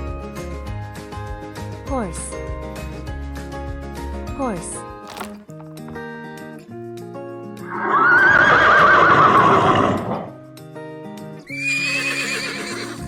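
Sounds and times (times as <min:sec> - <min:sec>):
background music: 0:00.0 - 0:13.0
horse whinnying: 0:07.6 - 0:10.4, 0:11.5 - 0:13.0.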